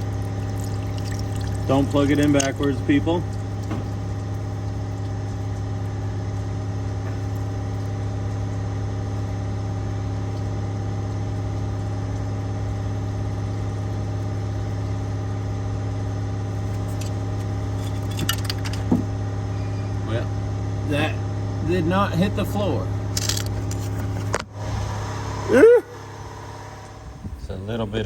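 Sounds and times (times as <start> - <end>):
engine idling: 0.0 - 28.0.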